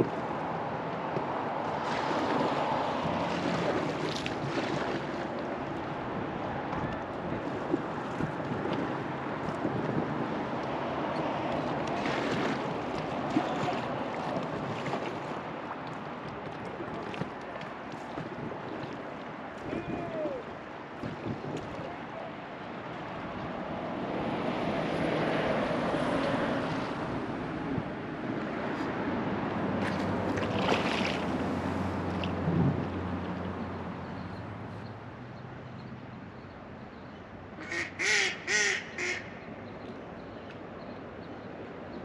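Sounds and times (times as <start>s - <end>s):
river water rushing: 0.0s - 21.0s, 21.9s - 35.3s
duck quacking: 37.6s - 39.3s.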